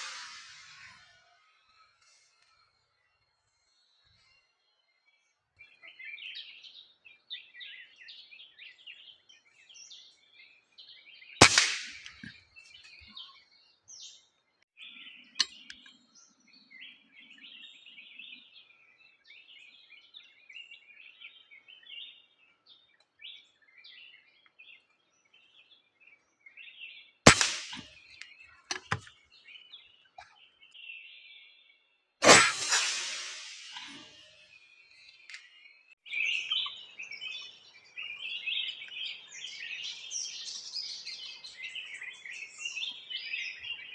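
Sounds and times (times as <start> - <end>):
air rifle firing: 0.0 - 0.9, 11.4 - 12.3, 27.3 - 27.9, 32.2 - 34.2
small birds chirping: 0.0 - 43.9.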